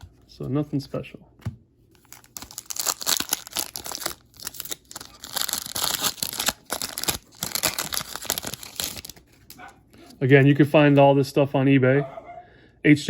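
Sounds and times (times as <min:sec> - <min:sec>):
foil wrapper tearing and crinkling: 0:02.0 - 0:09.6.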